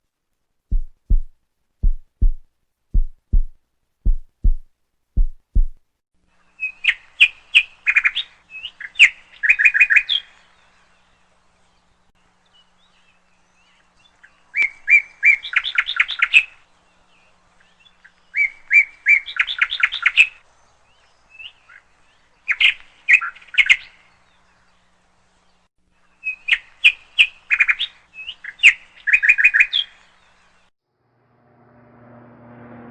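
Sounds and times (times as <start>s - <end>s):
bird chirping: 0.7s - 5.8s, 6.4s - 30.7s
low double thumps heartbeat: 0.7s - 5.9s.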